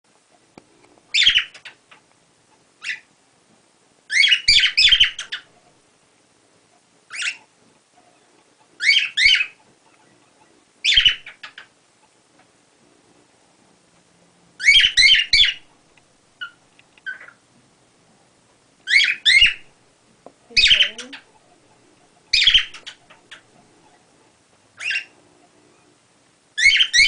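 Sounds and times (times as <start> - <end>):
cockatiel chirping: 1.1 - 1.8, 2.8 - 3.1, 4.1 - 5.6, 7.1 - 7.5, 8.8 - 11.7, 14.6 - 15.7, 16.4 - 17.4, 18.8 - 19.7, 20.5 - 21.4, 22.2 - 24.0, 24.8 - 25.2, 26.6 - 27.0.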